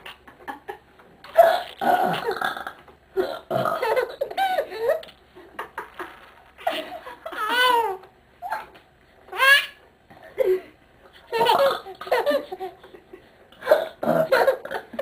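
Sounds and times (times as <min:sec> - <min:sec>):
baby laughing and squealing: 0:06.6 - 0:09.8.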